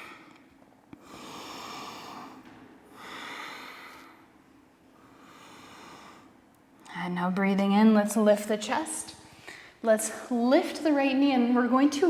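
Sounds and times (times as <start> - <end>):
woman breathing: 1.0 - 6.5, 9.2 - 9.8.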